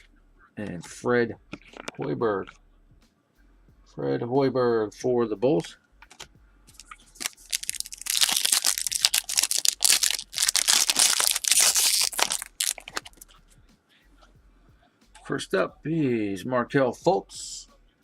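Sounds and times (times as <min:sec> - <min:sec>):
foil wrapper crinkling: 0:06.8 - 0:13.3.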